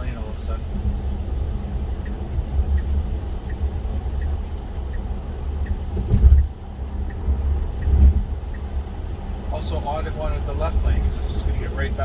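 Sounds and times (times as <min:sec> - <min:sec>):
turn signal ticking: 0:00.0 - 0:12.0
tyre and road rumble: 0:00.0 - 0:12.0
low thump: 0:06.0 - 0:06.4.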